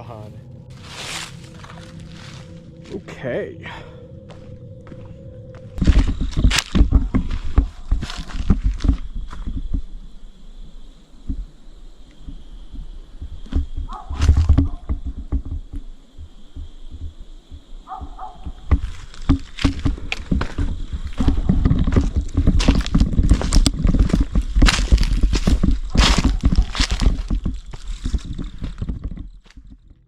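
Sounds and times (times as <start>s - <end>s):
footsteps crunching through dry leaves: 0.7s - 3.2s, 3.8s - 9.7s, 18.2s - 29.6s.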